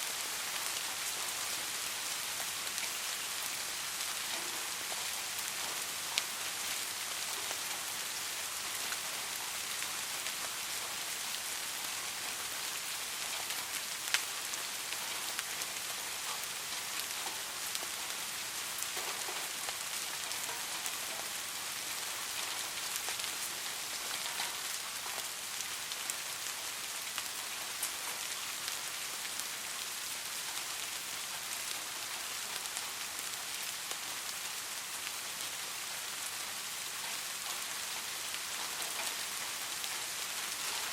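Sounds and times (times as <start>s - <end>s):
soft rain falling: 0.0s - 40.9s
raindrop ticks: 4.3s - 7.9s, 18.8s - 21.4s, 22.1s - 25.4s, 37.0s - 40.9s.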